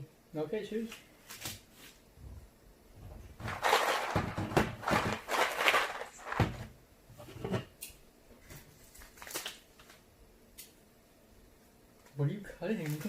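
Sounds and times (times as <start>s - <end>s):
snack wrappers crinkling: 3.5s - 6.4s, 8.8s - 10.0s, 12.7s - 13.0s.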